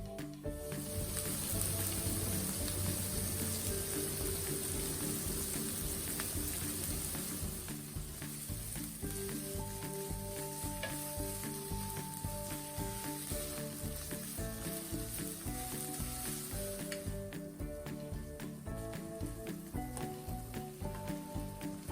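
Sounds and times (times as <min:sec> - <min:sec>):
soft background music: 0:00.0 - 0:21.9
stirring in a pan: 0:00.5 - 0:21.9
food sizzling in oil: 0:00.6 - 0:17.4.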